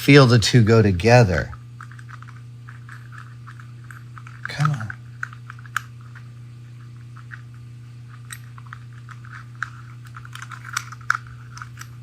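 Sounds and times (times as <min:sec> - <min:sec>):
low hum: 0:00.0 - 0:12.0
metal parts clicking and scraping: 0:01.8 - 0:06.3, 0:08.1 - 0:12.0.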